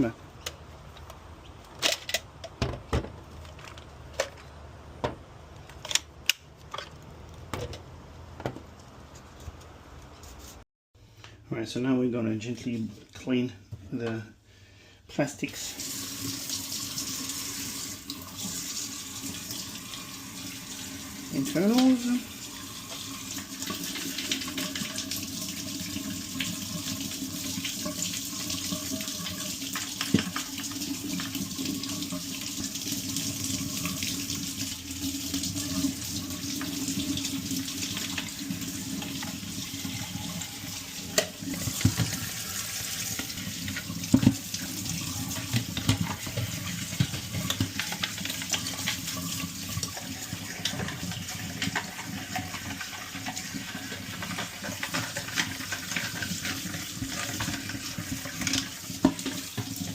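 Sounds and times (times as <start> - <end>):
plastic parts being brushed: 9.1 - 10.6
tap water running into sink: 15.7 - 59.9.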